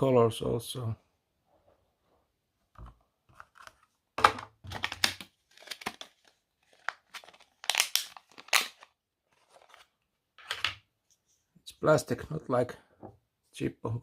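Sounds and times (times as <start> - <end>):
plastic packaging crinkling: 4.7 - 9.9.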